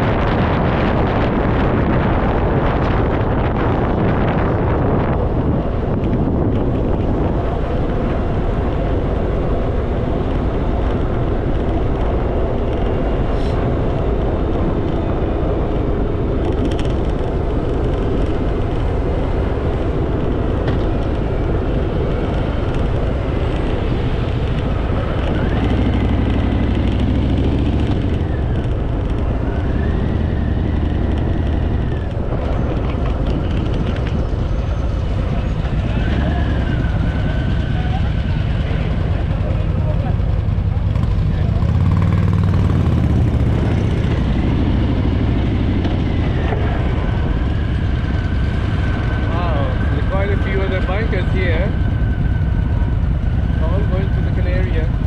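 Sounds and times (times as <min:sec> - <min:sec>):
wind and road noise: 0:00.0 - 0:55.0
motorcycle engine running: 0:14.1 - 0:55.0.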